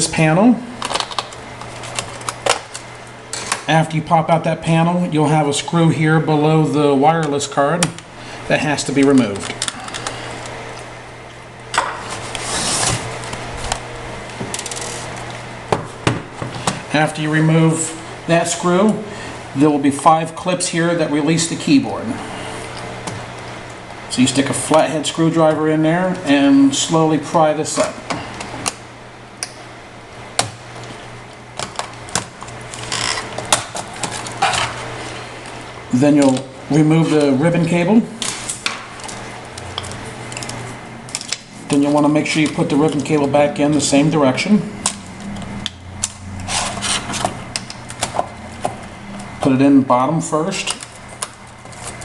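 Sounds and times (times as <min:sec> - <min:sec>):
metal scraping on plastic: 0:46.4 - 0:48.3.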